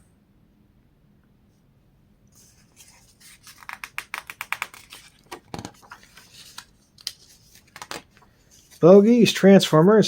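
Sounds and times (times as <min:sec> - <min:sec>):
paper pages turning: 0:02.4 - 0:09.4.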